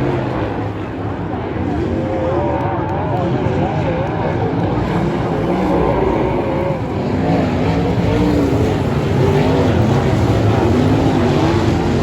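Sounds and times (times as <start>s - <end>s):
race car engines: 0.0s - 12.0s.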